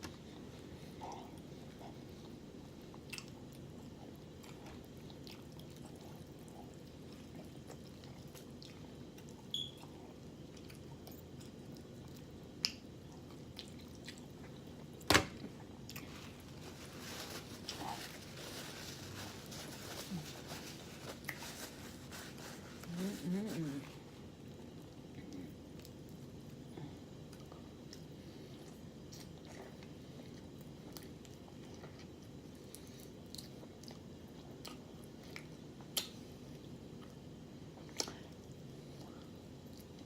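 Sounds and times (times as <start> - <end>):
person chewing chicken: 0.7 - 14.9, 27.2 - 37.2, 37.8 - 40.0.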